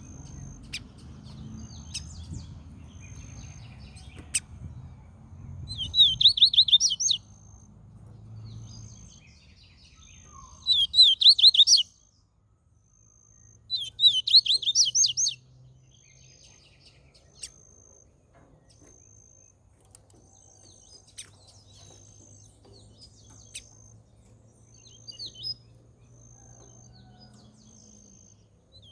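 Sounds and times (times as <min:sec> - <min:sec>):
bird whistling song: 0:05.6 - 0:07.5, 0:09.7 - 0:12.0, 0:13.7 - 0:15.4, 0:24.7 - 0:25.6.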